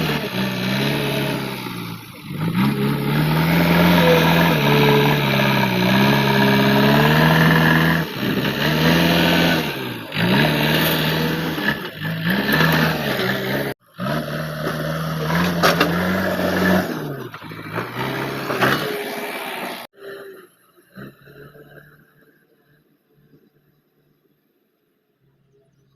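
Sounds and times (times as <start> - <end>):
diesel engine working: 0.0 - 22.2.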